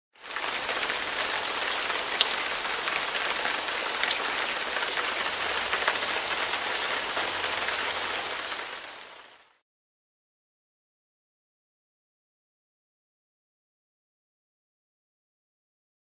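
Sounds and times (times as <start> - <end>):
sharp ticks of raindrops: 0.2 - 9.6
steady rain falling: 0.2 - 9.6.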